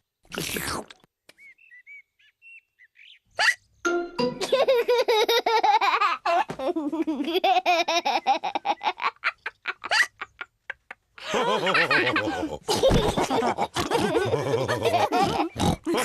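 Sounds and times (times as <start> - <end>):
cartoon characters laughing: 4.4 - 16.0.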